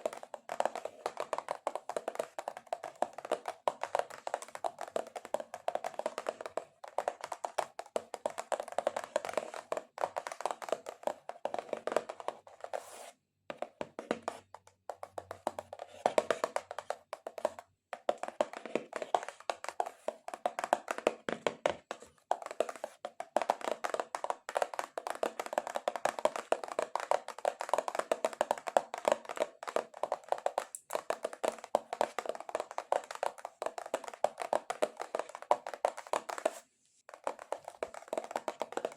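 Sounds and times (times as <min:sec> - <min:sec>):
nails tapping on cardboard box: 0:13.5 - 0:38.9.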